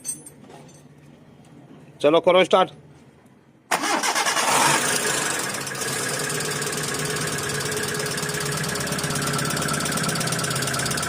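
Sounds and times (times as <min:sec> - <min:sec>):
car engine idling: 0:04.9 - 0:11.0.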